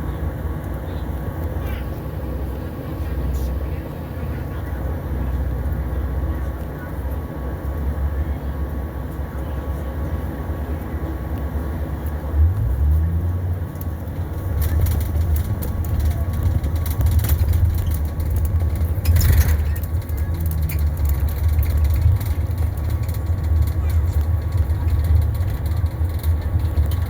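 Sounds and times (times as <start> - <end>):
bus engine rumbling: 0.0 - 27.0
rattles: 14.0 - 27.0.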